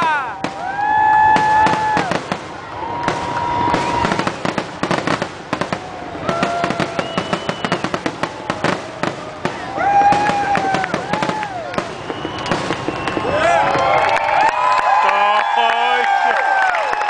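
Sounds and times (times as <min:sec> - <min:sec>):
firework pops and bangs: 0:00.4 - 0:13.6
firework whistles: 0:02.9 - 0:05.2, 0:06.2 - 0:13.6.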